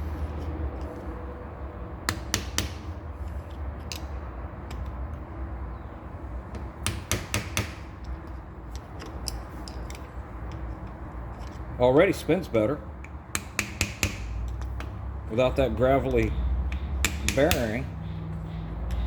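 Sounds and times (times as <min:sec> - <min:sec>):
metal taps and clinks: 0:08.0 - 0:11.6.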